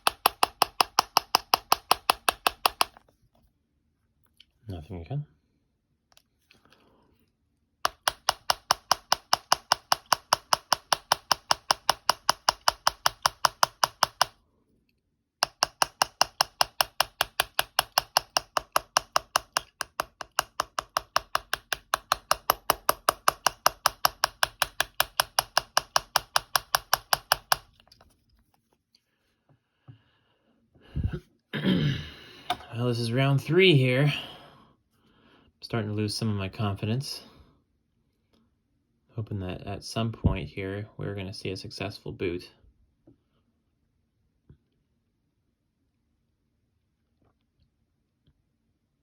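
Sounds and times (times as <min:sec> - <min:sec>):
rapid sharp clicks: 0:00.0 - 0:03.0, 0:07.8 - 0:14.4, 0:15.4 - 0:27.8.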